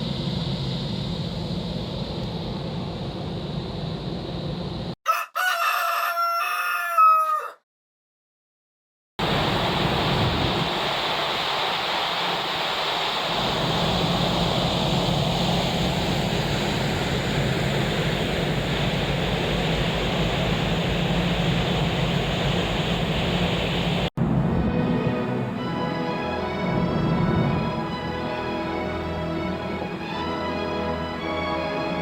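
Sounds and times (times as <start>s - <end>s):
rush of wind and sea water: 9.2s - 28.9s.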